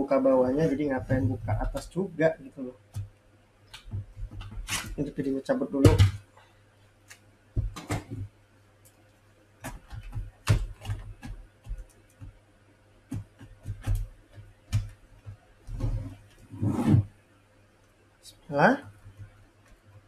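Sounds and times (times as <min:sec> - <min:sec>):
faint low hum: 0:00.0 - 0:20.0.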